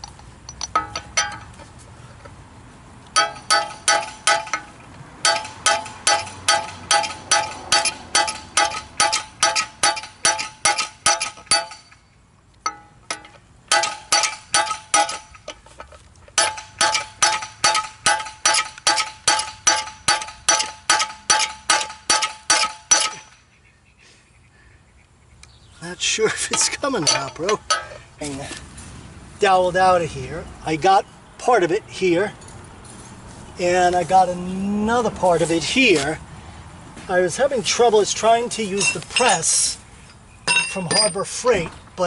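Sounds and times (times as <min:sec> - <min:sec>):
hammer ringing on metal: 0:03.2 - 0:11.9, 0:16.4 - 0:23.3.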